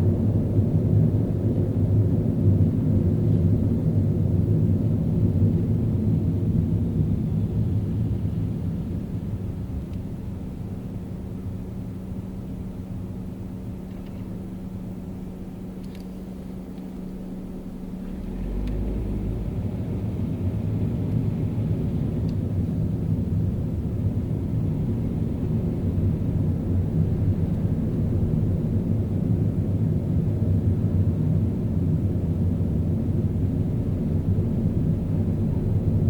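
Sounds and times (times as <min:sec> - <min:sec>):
car engine humming: 0:00.0 - 0:36.0
road rumble: 0:00.0 - 0:36.0.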